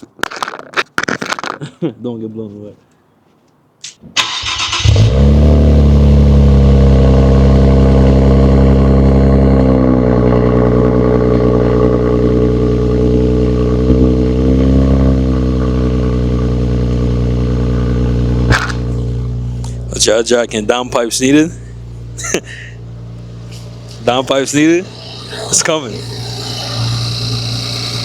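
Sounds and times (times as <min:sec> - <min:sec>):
car starter cranking: 0:04.2 - 0:05.2.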